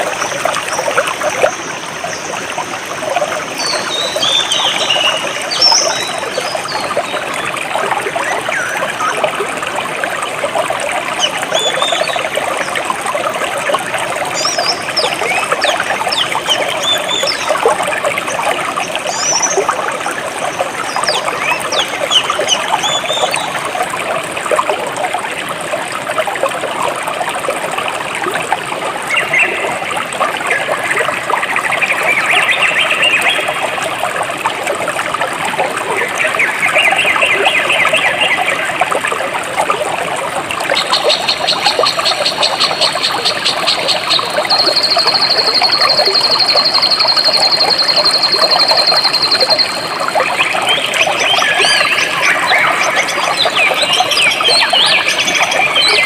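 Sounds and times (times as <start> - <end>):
stream flowing and trickling: 0.0 - 56.0.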